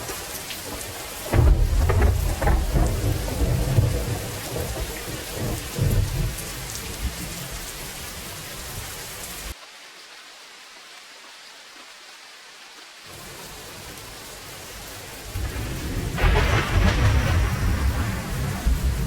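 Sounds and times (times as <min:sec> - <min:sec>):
heavy rain: 0:00.0 - 0:19.0
deep rolling rumble: 0:01.2 - 0:07.7, 0:15.1 - 0:19.0.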